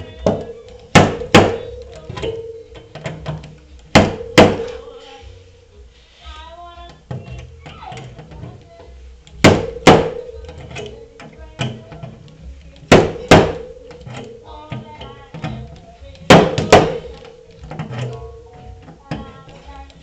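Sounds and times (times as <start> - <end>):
metal panel ringing: 0.0 - 5.0, 9.4 - 19.6
slide hammer metallic knocks: 12.8 - 18.2.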